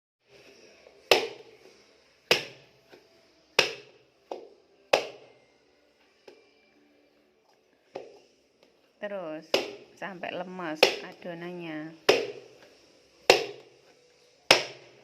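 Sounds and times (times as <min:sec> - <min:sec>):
dough slapping onto surface: 0:01.0 - 0:01.6, 0:02.3 - 0:02.7, 0:03.6 - 0:05.2, 0:09.5 - 0:09.9, 0:10.8 - 0:11.3, 0:12.0 - 0:13.8, 0:14.5 - 0:15.0.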